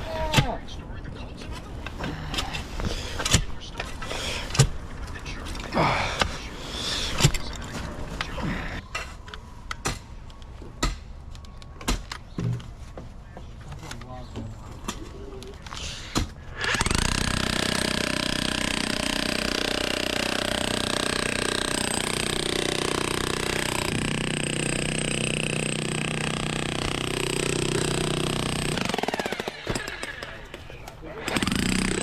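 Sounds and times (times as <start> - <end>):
loud motorized tool running: 16.7 - 29.8, 31.3 - 32.0.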